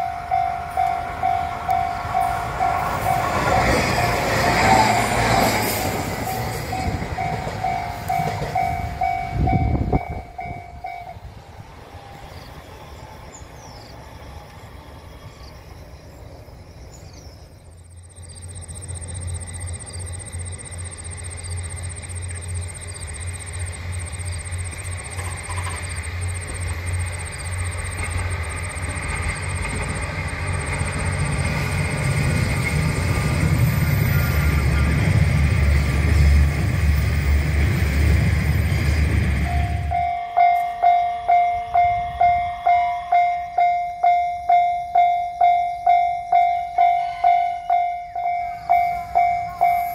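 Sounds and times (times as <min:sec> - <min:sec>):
railroad crossing bell ringing: 0:00.0 - 0:12.3, 0:24.6 - 0:35.4, 0:38.7 - 0:49.9
diesel railcar engine rumble: 0:00.0 - 0:49.9.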